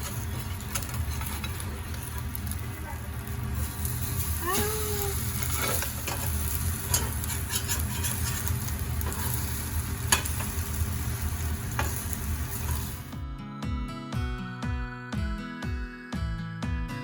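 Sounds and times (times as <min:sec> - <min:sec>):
food sizzling in frying pan: 0:00.0 - 0:13.2.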